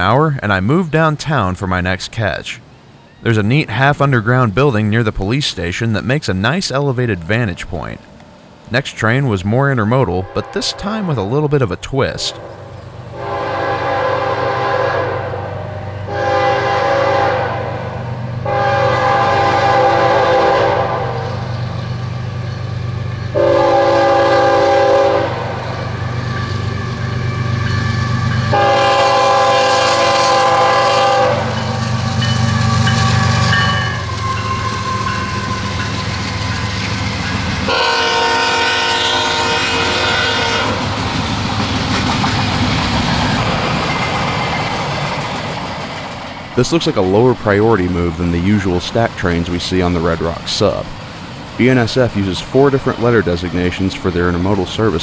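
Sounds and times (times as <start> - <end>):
locomotive and train rumbling: 0.0 - 55.0
locomotive air horn blasts: 12.3 - 21.4, 23.4 - 25.9, 28.5 - 31.8, 32.6 - 35.9, 37.7 - 40.8.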